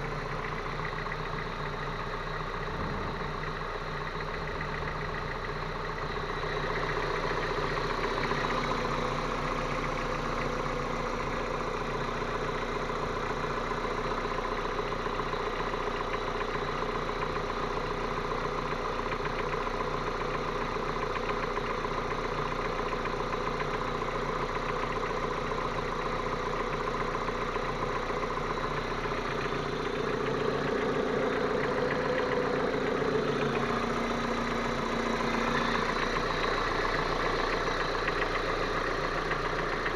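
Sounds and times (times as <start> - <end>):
petrol engine idling: 0.0 - 39.9
knock inside engine: 0.2 - 12.9.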